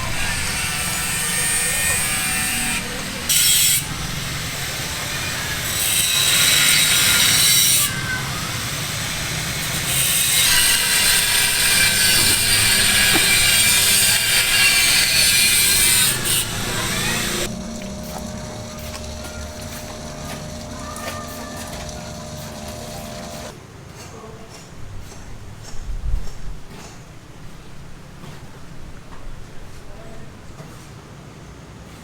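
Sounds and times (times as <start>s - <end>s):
power tool cutting: 0.0s - 23.5s
construction site noise: 0.0s - 25.3s.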